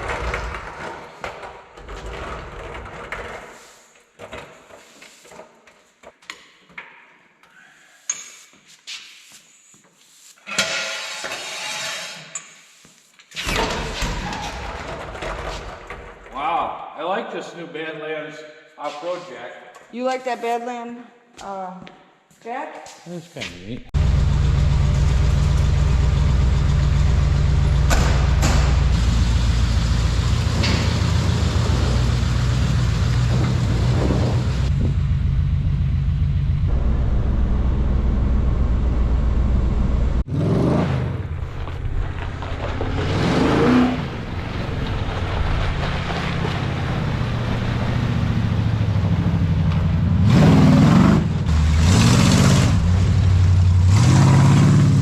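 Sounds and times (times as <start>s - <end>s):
truck engine revving: 24.0s - 55.0s.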